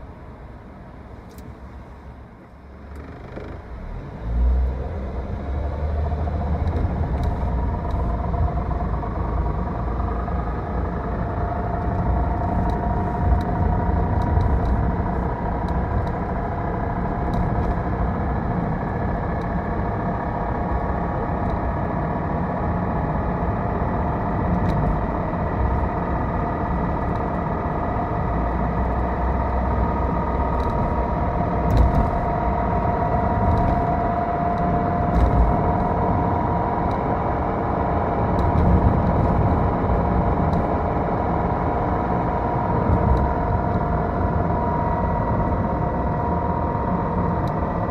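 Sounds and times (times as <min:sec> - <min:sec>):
road and engine rumble: 0:00.0 - 0:47.9
transmission whine: 0:06.0 - 0:47.9.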